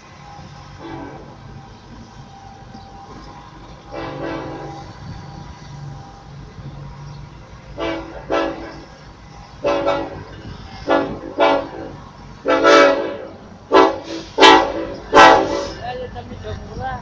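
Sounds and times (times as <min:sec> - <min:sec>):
locomotive air horn blasts: 0:00.0 - 0:01.8, 0:03.8 - 0:05.3, 0:07.7 - 0:09.0, 0:09.6 - 0:15.9
diesel locomotive rumble: 0:00.0 - 0:17.0.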